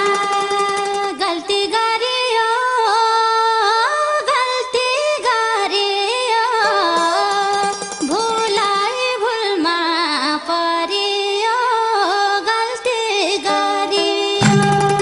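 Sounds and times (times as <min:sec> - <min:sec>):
sliding high melody: 0:06.6 - 0:08.7.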